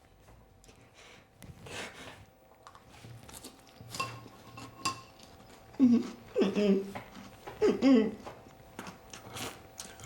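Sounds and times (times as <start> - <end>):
child chewing crunchy cereal: 0.4 - 10.0.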